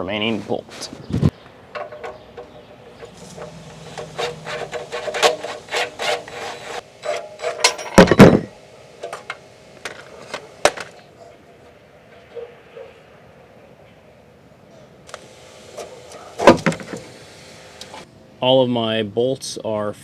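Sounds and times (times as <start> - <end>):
metallic clunk: 0.7 - 11.0, 15.6 - 17.9.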